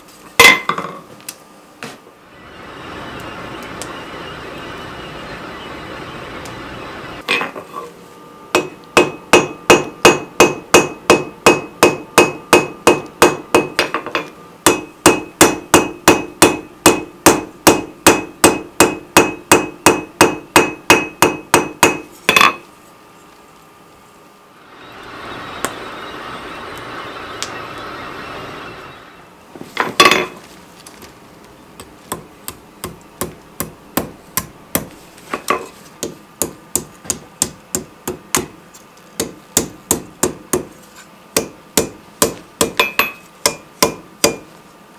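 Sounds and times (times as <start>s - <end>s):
hammer striking steel on anvil: 8.5s - 22.6s, 32.1s - 38.6s, 39.2s - 40.7s, 41.4s - 44.5s.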